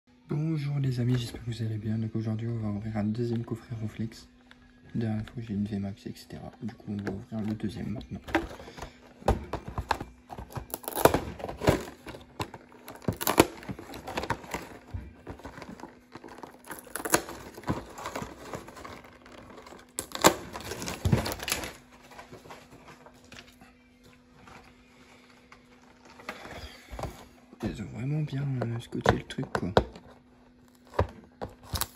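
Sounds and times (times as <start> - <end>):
cardboard crinkling: 6.6 - 23.6
packing tape tearing: 8.2 - 22.5, 30.7 - 31.9.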